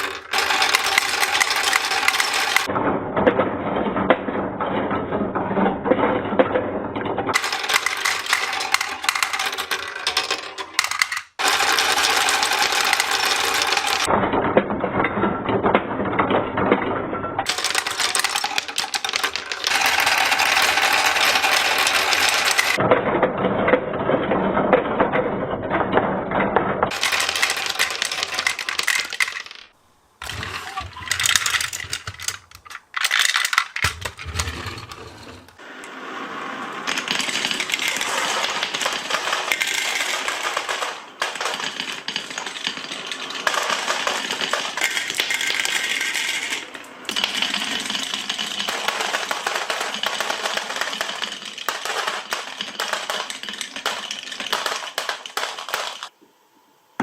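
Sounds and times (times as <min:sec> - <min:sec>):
glass marbles clattering down tracks: 0:00.0 - 0:02.7, 0:07.3 - 0:14.1, 0:17.4 - 0:22.8, 0:26.9 - 0:35.6, 0:36.8 - 0:56.1.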